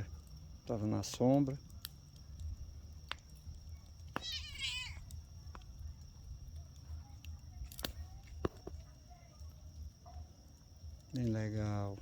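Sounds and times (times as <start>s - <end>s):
bonfire crackling: 0.0s - 12.0s
high-pitched animal call: 4.2s - 5.0s.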